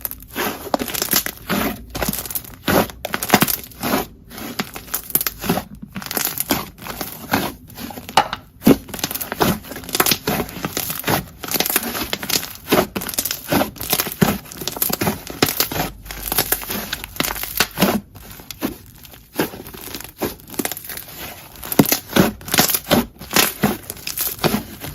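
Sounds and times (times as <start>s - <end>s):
slime squeezed crackling: 0.0s - 24.9s.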